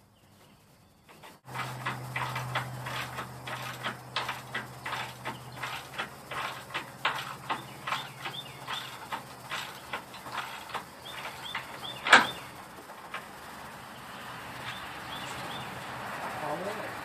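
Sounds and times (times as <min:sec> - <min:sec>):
small birds chirping: 0:00.0 - 0:17.0
rhythmic metallic clicking: 0:01.0 - 0:16.8
sharp metallic clack: 0:01.1 - 0:13.3.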